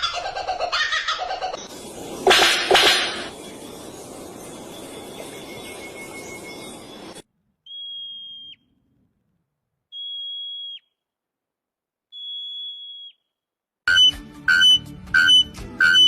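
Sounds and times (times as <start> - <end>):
hissing noise: 1.6 - 7.2
high whistled notes: 2.0 - 8.5, 13.9 - 16.0.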